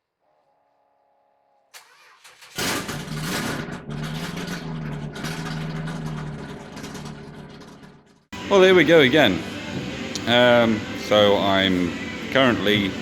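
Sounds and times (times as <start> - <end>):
engine starter cranking: 1.7 - 8.3
car engine idling: 1.8 - 13.0.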